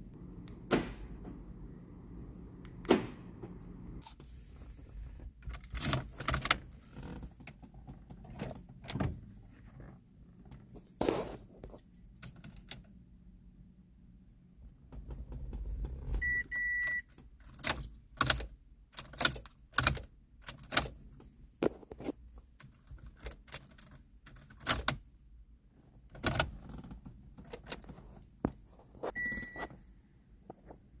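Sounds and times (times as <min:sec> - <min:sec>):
car keys jangling and clicking: 0:05.4 - 0:09.0, 0:15.3 - 0:21.4, 0:22.6 - 0:25.0
short electronic beep: 0:29.2 - 0:29.7.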